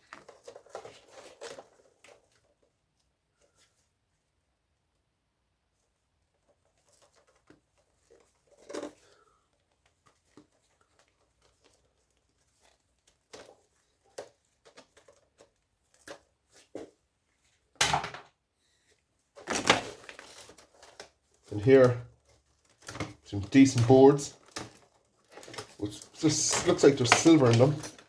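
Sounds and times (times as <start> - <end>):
metal parts clicking and rattling: 22.6 - 28.0.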